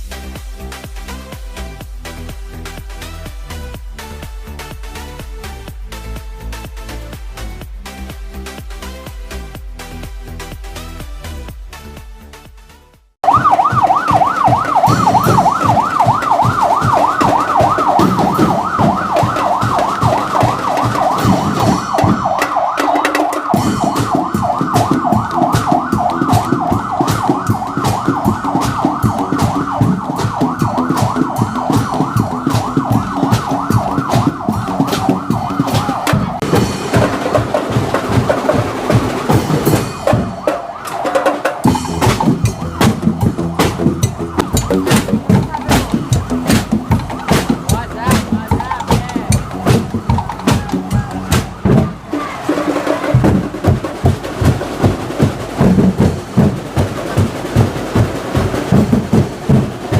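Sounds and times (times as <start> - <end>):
electronic dance music: 0.0 - 59.9
warbling siren-like synth: 13.2 - 53.5
drum beat: 13.2 - 59.9.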